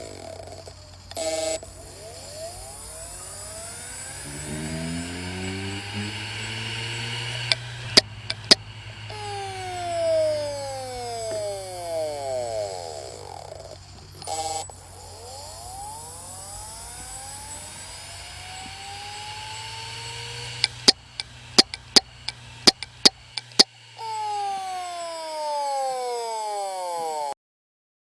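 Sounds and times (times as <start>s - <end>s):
hard disk whines falling in pitch: 0.0s - 27.4s
slow rising whine: 0.0s - 27.4s
sharp irregular hard disk clicks: 7.2s - 8.7s, 17.0s - 23.8s.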